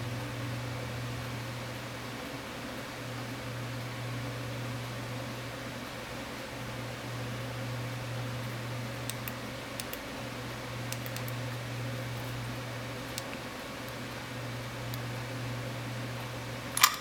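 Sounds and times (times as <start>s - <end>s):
machine hum with hiss: 0.0s - 17.0s.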